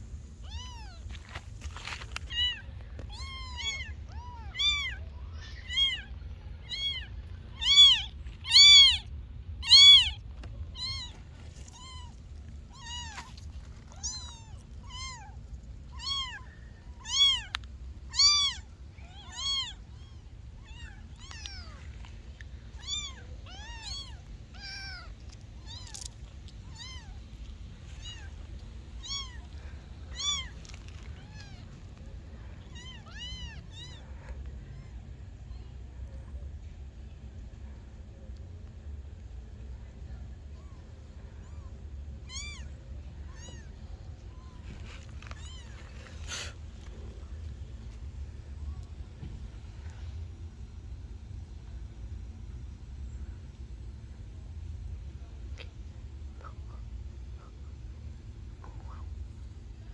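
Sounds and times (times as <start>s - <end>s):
kittens meowing: 0.4s - 1.1s, 2.2s - 10.2s, 10.8s - 26.1s, 26.7s - 34.9s, 40.5s - 47.1s.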